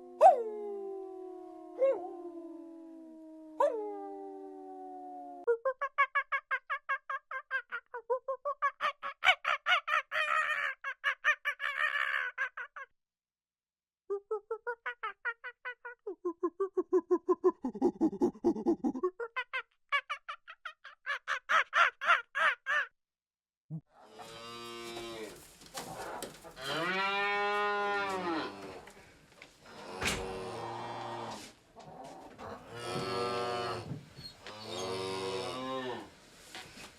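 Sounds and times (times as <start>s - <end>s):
cow mooing: 26.6s - 28.8s.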